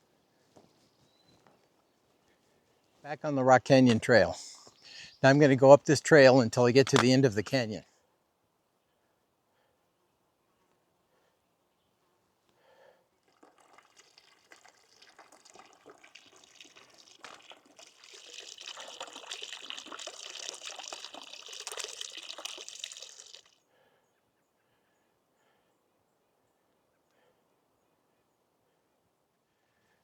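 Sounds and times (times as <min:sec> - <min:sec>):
stream splashing over rocks: 0:13.2 - 0:23.5.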